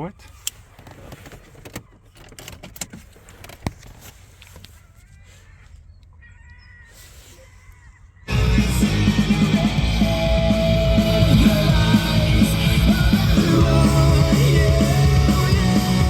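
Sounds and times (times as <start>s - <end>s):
rock music with guitar: 8.3s - 16.0s.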